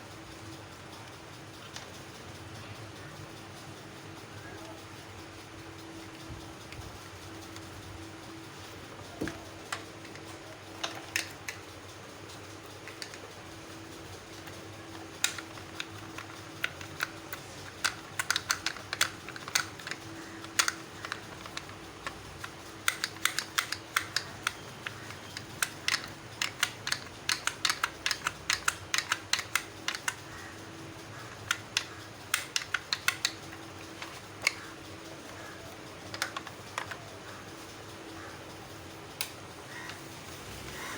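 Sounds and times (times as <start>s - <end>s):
faint steady hum: 0.0s - 40.9s.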